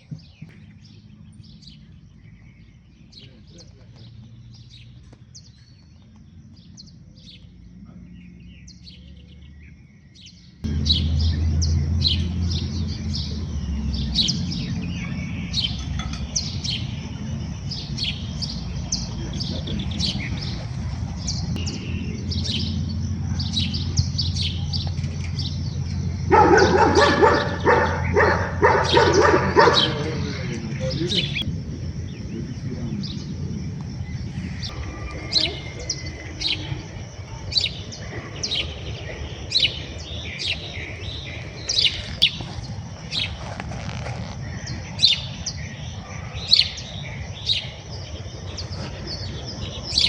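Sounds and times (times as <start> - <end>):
small birds chirping: 0.0 - 50.0
steady low rumble: 10.6 - 50.0.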